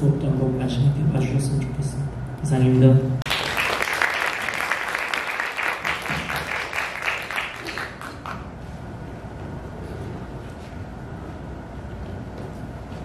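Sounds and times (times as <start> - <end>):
audience applauding: 3.3 - 8.6.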